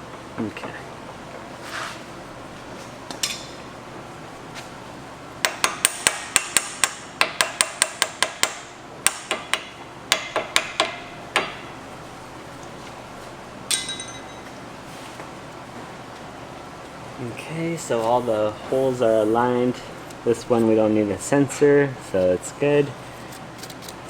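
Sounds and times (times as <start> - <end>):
hammer tapping on metal: 5.4 - 11.7.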